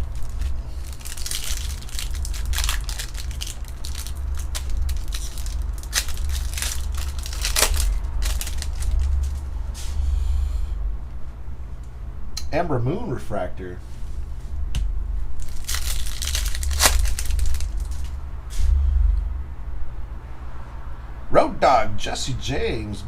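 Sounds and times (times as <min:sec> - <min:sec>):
card wrappers crinkling and tearing: 0:00.0 - 0:09.6, 0:15.4 - 0:18.2
steady low hum: 0:00.0 - 0:23.0.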